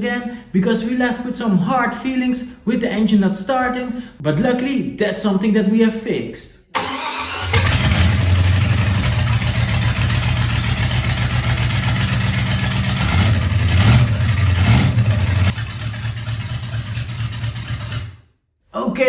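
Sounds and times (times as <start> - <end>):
boat engine running and revving: 7.6 - 16.2.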